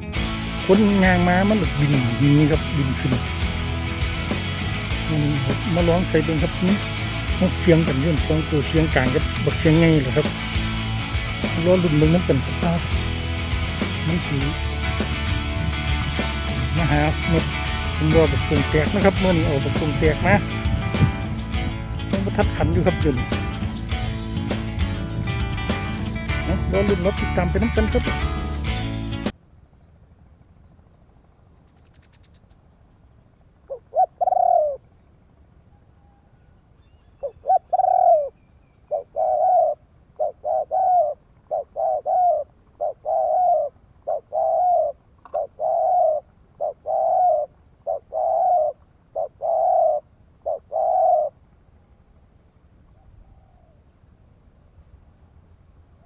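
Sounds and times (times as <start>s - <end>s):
dove cooing: 0.6s - 24.0s, 33.7s - 34.9s, 37.1s - 51.4s, 52.9s - 53.9s.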